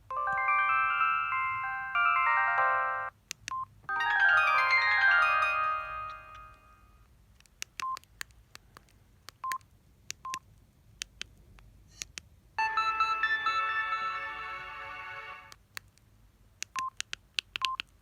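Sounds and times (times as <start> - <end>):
phone ringtone chiming notes: 0.1 - 3.1, 3.9 - 7.0, 12.6 - 15.5.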